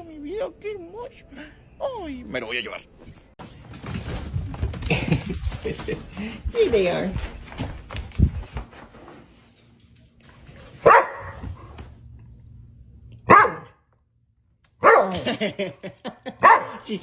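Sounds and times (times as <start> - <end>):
dog barking: 10.8 - 11.5, 13.2 - 13.8, 14.8 - 15.3, 16.4 - 16.9.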